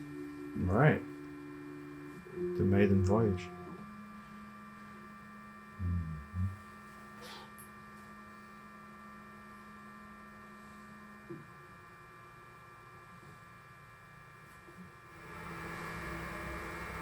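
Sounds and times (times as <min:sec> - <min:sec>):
printer humming: 0:00.0 - 0:06.8
motors and fans whining: 0:00.0 - 0:17.0.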